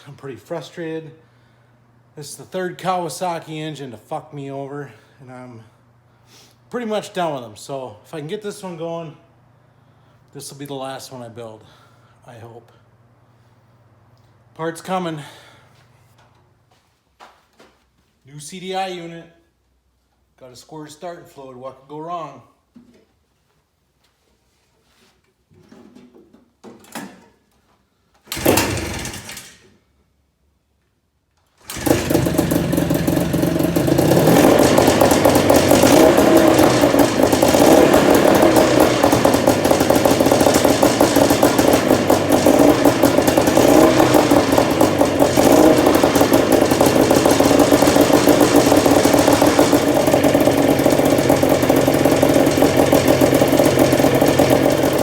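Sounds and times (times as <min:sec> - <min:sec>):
snowmobile engine starting and running: 0:28.2 - 0:29.8, 0:31.5 - 0:55.0.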